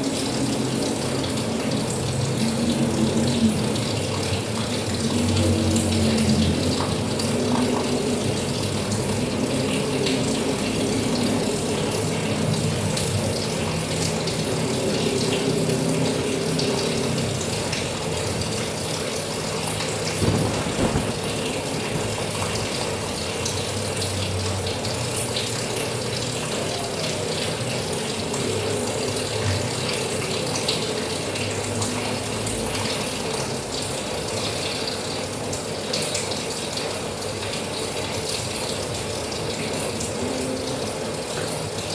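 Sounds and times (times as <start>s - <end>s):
steady rain falling: 0.0s - 41.9s
low rumble: 20.2s - 23.1s.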